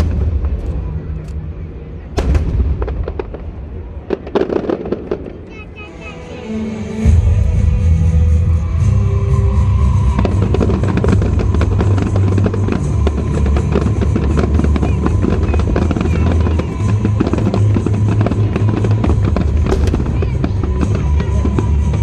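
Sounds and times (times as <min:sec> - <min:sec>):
fireworks crackling: 0:02.1 - 0:06.1, 0:09.4 - 0:22.0.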